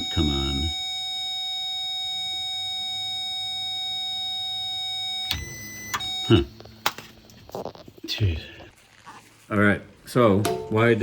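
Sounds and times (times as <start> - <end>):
circuit tester high tone: 0.0 - 6.7.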